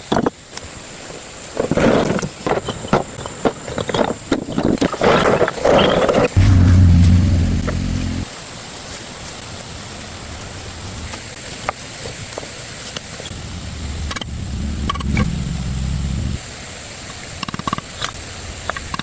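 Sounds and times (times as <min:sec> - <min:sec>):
low engine rumble: 0:06.4 - 0:08.3, 0:13.3 - 0:16.4.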